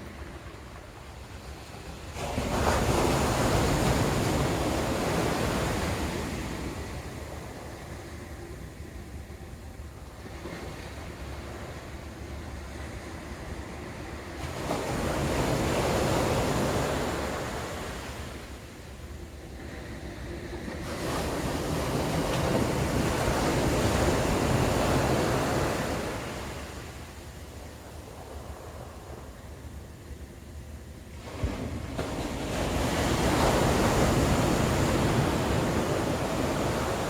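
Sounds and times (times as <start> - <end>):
rushing surf-like noise: 31.1 - 37.0.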